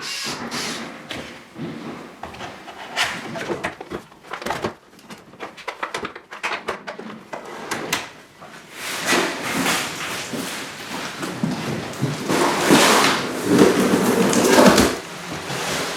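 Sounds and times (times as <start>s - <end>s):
rough scraping noise: 11.6s - 15.9s.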